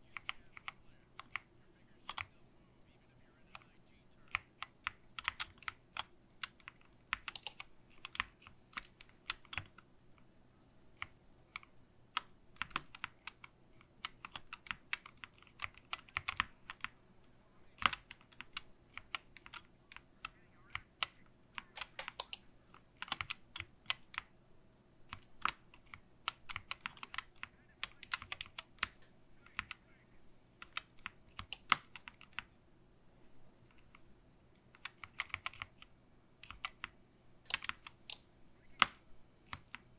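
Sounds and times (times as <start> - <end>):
keyboard key clicks: 20.7 - 22.4, 34.6 - 38.2.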